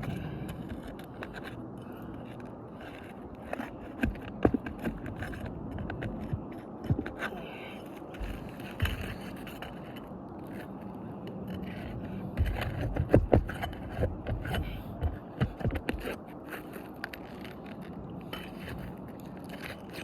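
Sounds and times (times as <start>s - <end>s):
roofing tool scraping under shingles: 0.0s - 20.0s
sharp clicks and knocks: 2.9s - 7.3s, 11.4s - 17.4s.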